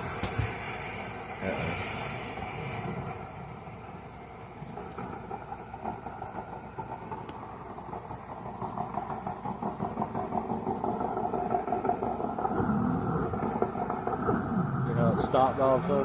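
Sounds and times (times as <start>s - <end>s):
motor running: 6.9s - 16.0s.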